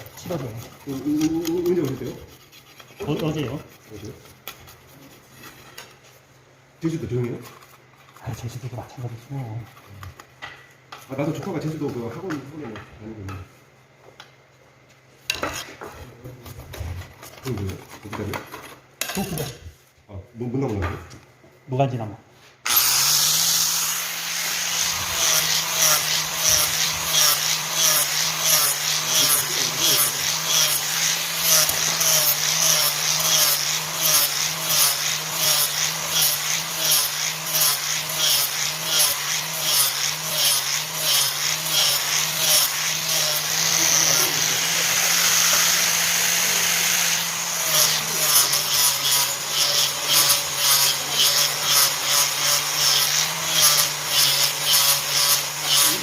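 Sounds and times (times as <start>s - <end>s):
power tool motor grinding axe: 0.0s - 3.9s, 22.6s - 56.0s.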